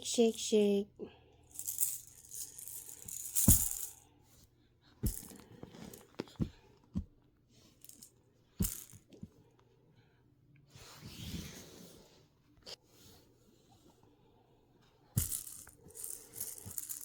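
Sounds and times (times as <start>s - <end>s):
toy baby shaker rattling: 1.5s - 4.0s, 5.1s - 5.4s, 7.9s - 9.0s, 15.2s - 17.0s.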